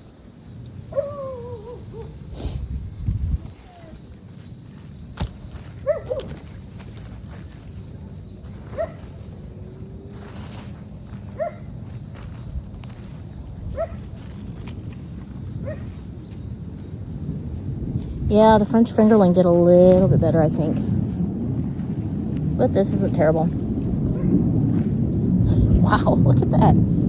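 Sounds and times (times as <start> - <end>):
animal calls: 0.9 - 2.6
soft rustling: 2.0 - 26.2.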